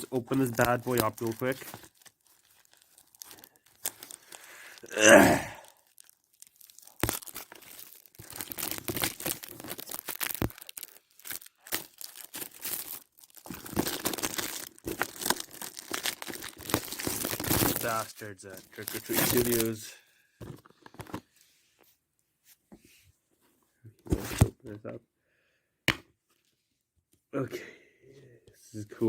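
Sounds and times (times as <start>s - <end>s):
plastic wrap tearing and crinkling: 0.0s - 19.8s.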